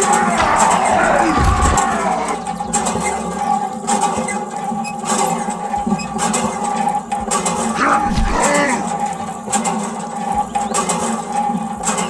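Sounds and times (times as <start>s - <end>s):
animal call: 0.0s - 2.9s
steady background sound: 0.0s - 3.0s.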